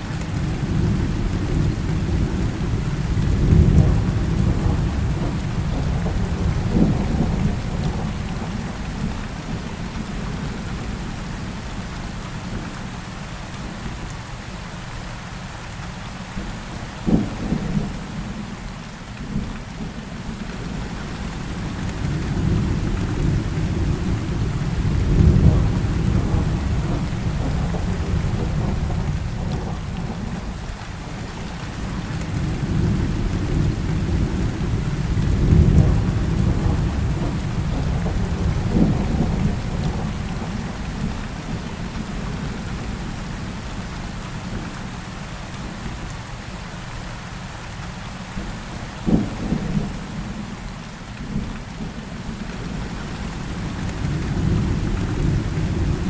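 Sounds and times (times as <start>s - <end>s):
heavy rain falling: 0.0s - 56.0s
rolling thunder: 0.4s - 9.0s, 21.5s - 43.0s, 52.6s - 56.0s
sharp thunderclap: 31.9s - 40.7s.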